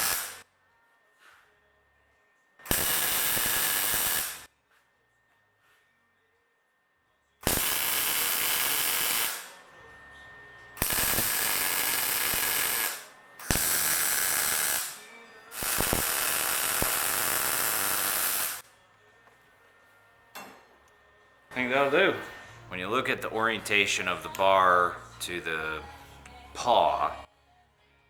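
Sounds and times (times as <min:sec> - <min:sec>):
arc welder crackling hiss: 0:00.0 - 0:00.4, 0:02.7 - 0:04.5, 0:07.4 - 0:09.7, 0:10.7 - 0:18.6.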